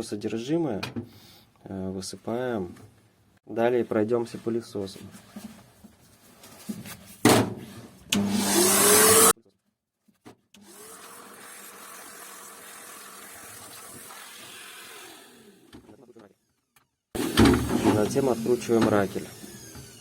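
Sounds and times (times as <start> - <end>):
vacuum cleaner motor: 8.2 - 9.3, 17.2 - 20.0.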